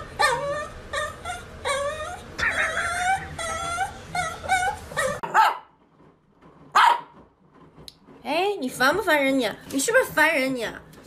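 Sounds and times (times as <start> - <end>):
dog whining and yipping: 0.0 - 5.3.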